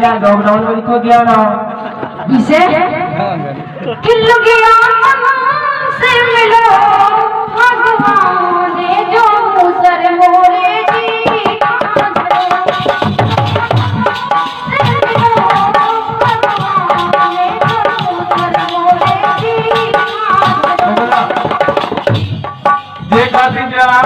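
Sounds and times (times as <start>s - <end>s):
hand drum fast rhythm: 10.9s - 24.0s.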